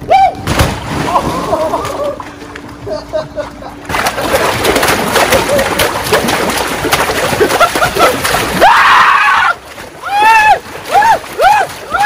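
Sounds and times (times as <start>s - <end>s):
splashing through slimy water: 3.9s - 12.0s
person yelling: 8.6s - 12.0s.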